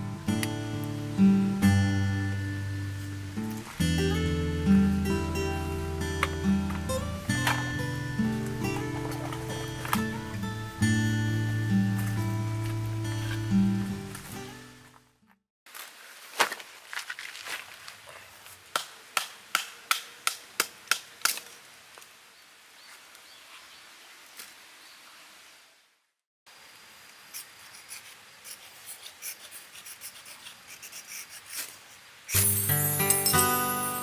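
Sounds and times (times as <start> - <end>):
acoustic guitar music: 0.0 - 14.9, 32.4 - 34.0.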